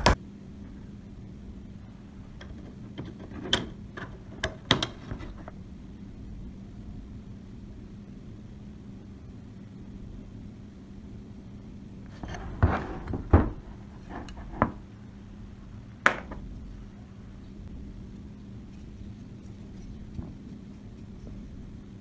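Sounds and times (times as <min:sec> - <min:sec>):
steady low hum: 0:00.0 - 0:22.0
sharp knocks and clicks: 0:02.4 - 0:05.6, 0:16.1 - 0:16.5.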